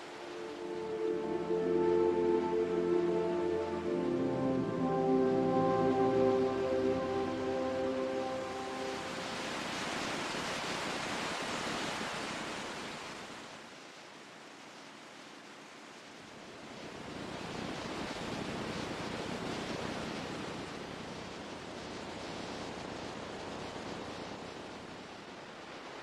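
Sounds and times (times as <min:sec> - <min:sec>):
ocean waves rushing: 0:00.0 - 0:12.6.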